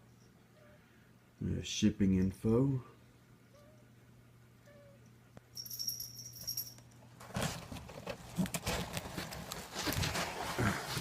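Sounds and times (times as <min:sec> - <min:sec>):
cardboard box being handled: 0:07.2 - 0:11.0
knocks scrapes and rustling: 0:07.2 - 0:11.0.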